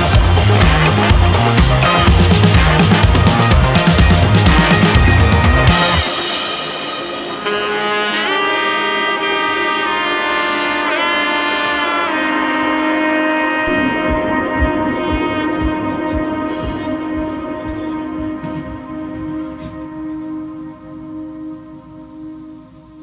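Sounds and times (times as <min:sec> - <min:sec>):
sustained chords: 0:00.0 - 0:10.6, 0:11.5 - 0:23.0
melody of long held notes: 0:00.0 - 0:23.0
soft low beat: 0:13.6 - 0:22.4.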